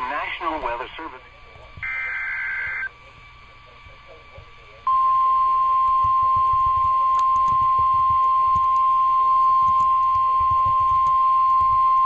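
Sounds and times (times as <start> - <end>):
faint radio static: 0.0 - 12.0.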